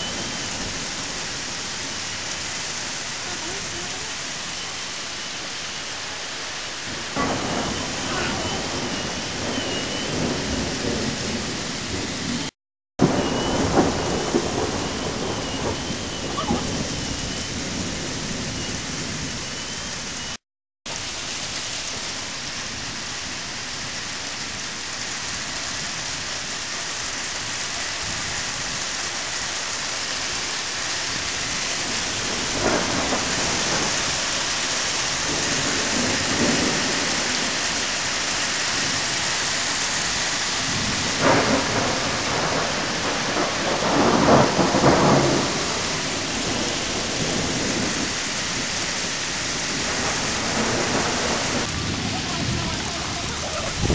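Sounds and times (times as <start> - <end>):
thunder rumbling: 0.0 - 20.4, 21.0 - 53.9
heavy rain pouring: 0.0 - 53.9
sharp thunderclaps: 6.9 - 20.3, 31.1 - 53.9.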